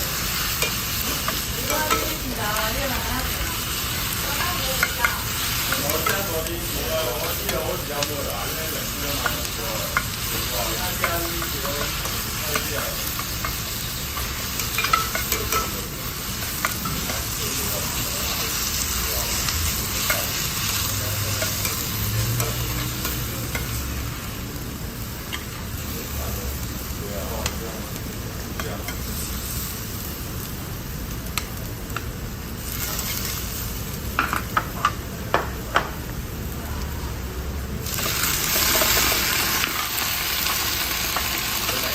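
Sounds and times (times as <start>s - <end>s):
food sizzling: 0.0s - 41.9s
utensils clinking on pan: 0.1s - 3.1s, 4.2s - 23.9s, 37.9s - 41.9s
metal utensil clinking on pan: 14.2s - 15.8s.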